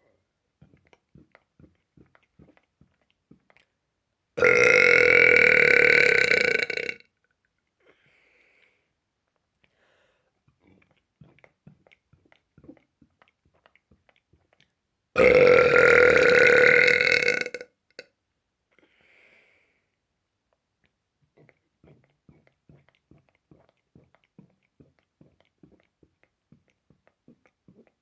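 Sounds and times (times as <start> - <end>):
person burping: 4.4 - 7.0, 15.2 - 17.8
faint mouth clicks: 10.5 - 14.8.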